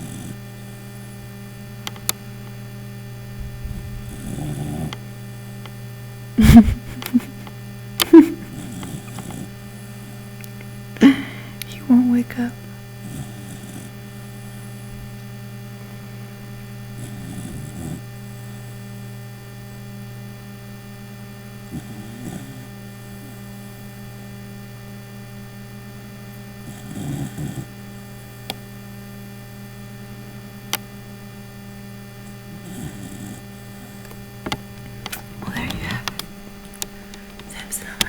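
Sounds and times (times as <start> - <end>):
pet snoring: 0.0 - 2.0, 3.5 - 5.7, 6.4 - 20.0, 21.5 - 24.3, 25.9 - 28.6, 32.2 - 38.0
steady electrical hum: 0.0 - 38.0
sharp clicks: 1.8 - 2.2, 34.0 - 38.0.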